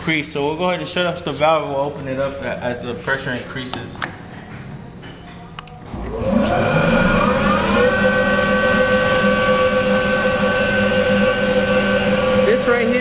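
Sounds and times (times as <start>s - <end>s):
air compressor whining and running: 5.8s - 13.0s.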